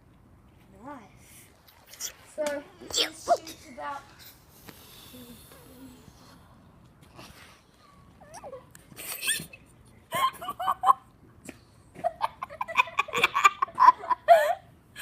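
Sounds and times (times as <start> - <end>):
children laughing: 8.9 - 11.1, 11.9 - 14.7.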